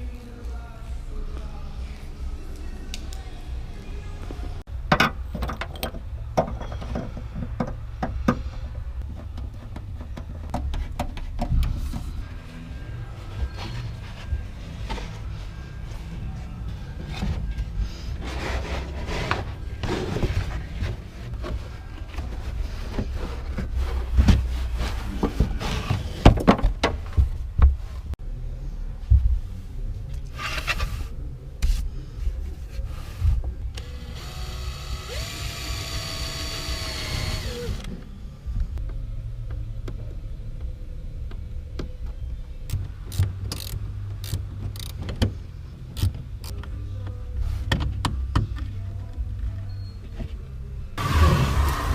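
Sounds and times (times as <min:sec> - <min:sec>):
low steady rumble: 0:00.0 - 0:51.9
rustling handling noise: 0:09.1 - 0:28.2.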